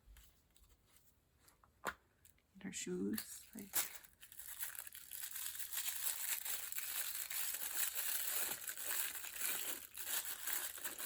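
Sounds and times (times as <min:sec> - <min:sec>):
plastic wrapping crinkling: 0:03.4 - 0:11.0.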